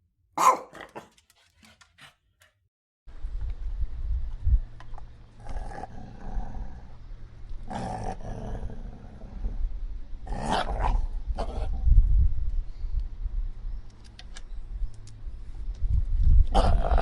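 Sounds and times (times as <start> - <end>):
dog growling and snarling: 0.4 - 1.2, 5.4 - 7.0, 7.6 - 9.6, 10.2 - 11.9, 16.5 - 17.0.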